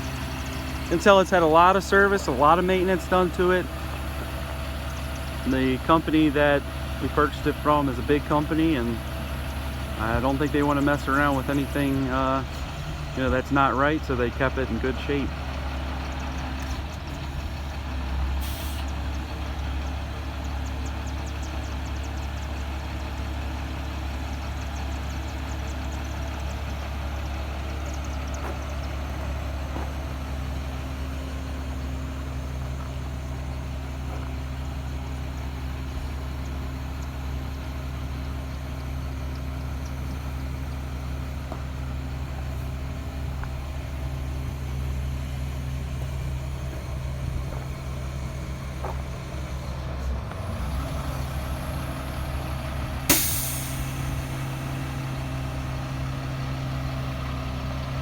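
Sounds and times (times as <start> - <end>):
diesel truck engine running: 0.0 - 58.0
brief hiss: 53.1 - 54.5.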